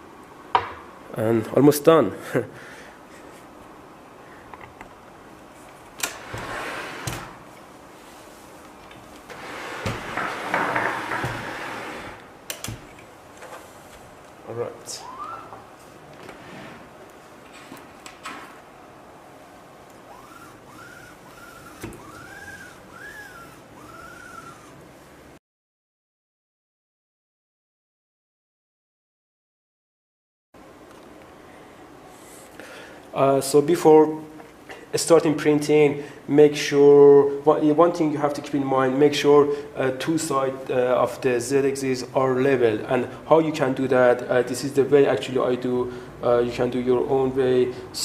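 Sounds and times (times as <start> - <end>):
stepper motor whines: 20.0 - 24.8.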